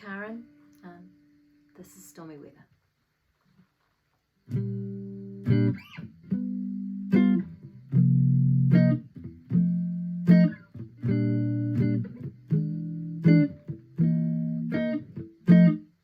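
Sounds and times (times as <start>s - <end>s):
guitar strumming chords: 4.5s - 16.0s.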